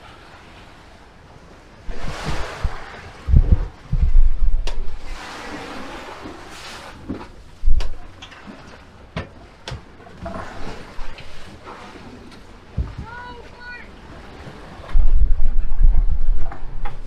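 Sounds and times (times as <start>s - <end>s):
rough sea rushing: 0.0s - 17.0s
wind buffeting microphone: 1.8s - 6.2s, 7.2s - 8.2s, 14.0s - 17.0s
sharp knocks from boat: 7.0s - 10.4s, 12.3s - 13.3s.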